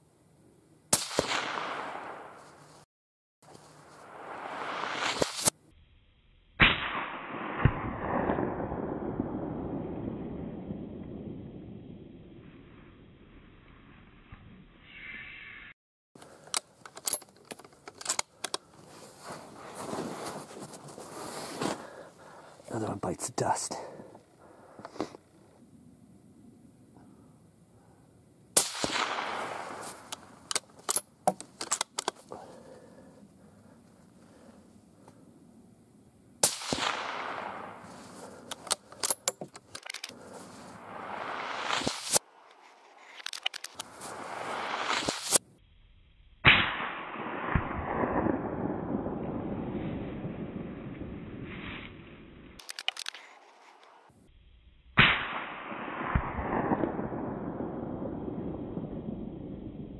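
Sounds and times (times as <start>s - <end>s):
suppressed rifle shot: 0.9s - 2.5s, 6.6s - 11.6s, 28.6s - 33.0s, 36.4s - 39.2s, 40.1s - 42.2s, 42.9s - 45.4s, 46.4s - 51.2s, 55.0s - 59.6s
rising rush ending in crack: 4.3s - 5.6s, 40.4s - 45.4s
rolling echo: 36.4s - 38.5s.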